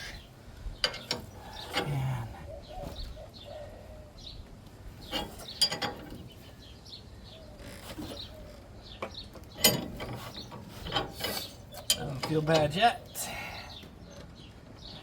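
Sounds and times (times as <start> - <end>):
metallic clicks and creaks: 0.8 - 2.1, 5.0 - 6.5, 7.6 - 12.9.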